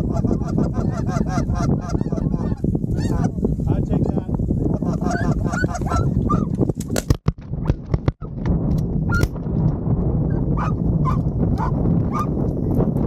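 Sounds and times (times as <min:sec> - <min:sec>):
geese honking: 0:00.0 - 0:03.4, 0:04.8 - 0:06.4
low wind rumble: 0:00.0 - 0:13.0.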